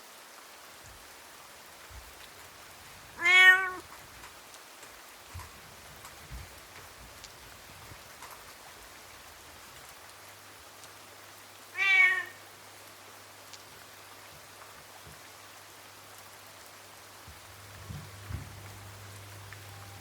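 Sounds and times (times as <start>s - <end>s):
faint rain hiss: 0.0s - 20.0s
cat meowing: 3.2s - 3.8s, 11.7s - 12.4s.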